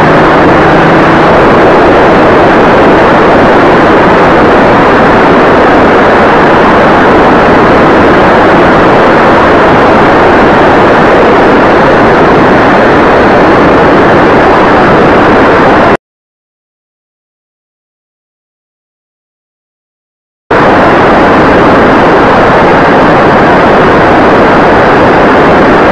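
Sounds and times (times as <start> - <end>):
propeller noise: 0.0 - 16.0, 20.5 - 25.9
wind rushing: 0.0 - 16.0.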